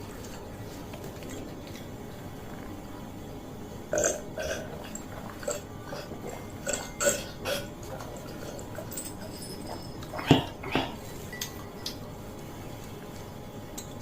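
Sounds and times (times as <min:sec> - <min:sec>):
utensils clicking on dishes: 0:04.0 - 0:12.1, 0:13.7 - 0:14.0.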